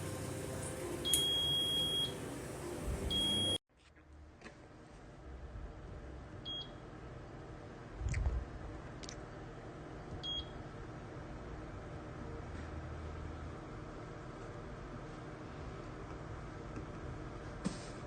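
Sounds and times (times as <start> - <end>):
appliance fan humming: 0.0 - 3.6, 4.6 - 18.0
electronic control panel beeps: 1.0 - 2.2, 3.1 - 3.6.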